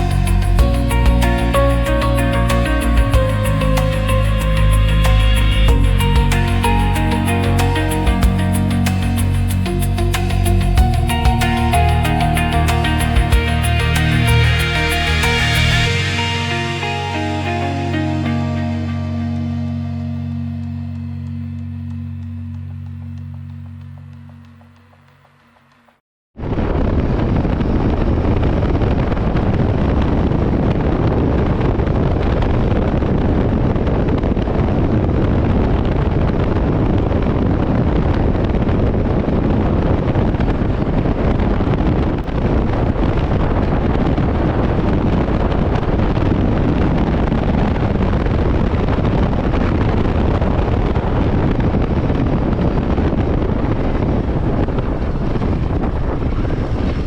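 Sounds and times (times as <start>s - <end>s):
wind rush over microphone: 0.0s - 25.0s, 26.4s - 57.0s
motorcycle engine running: 19.0s - 26.0s.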